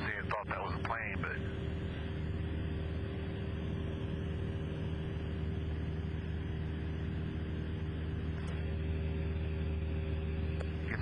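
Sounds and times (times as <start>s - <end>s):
propeller plane engine droning: 0.0s - 11.0s.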